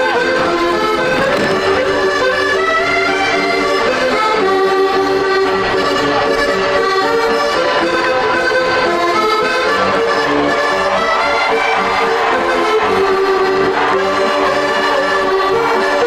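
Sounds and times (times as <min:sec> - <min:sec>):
accordion melody: 0:00.0 - 0:02.1.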